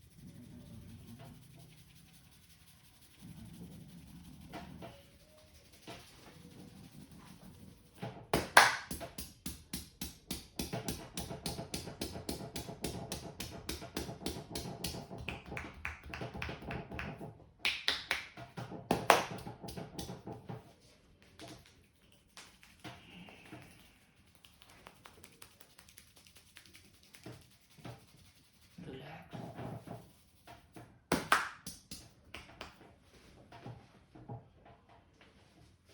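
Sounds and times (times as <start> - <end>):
hands slapping and tapping head: 8.0 - 20.6, 21.2 - 28.2, 30.5 - 33.0.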